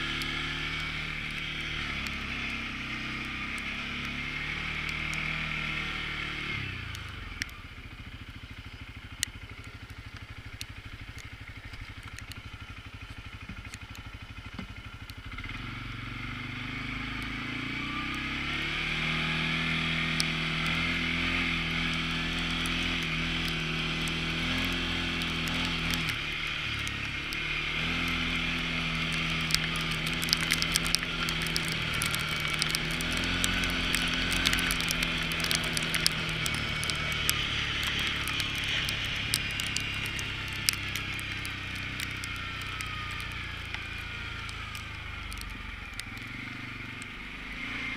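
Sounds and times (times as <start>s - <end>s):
atv engine revving: 0.0s - 47.9s
sharp clicks: 9.1s - 15.2s, 21.8s - 47.2s.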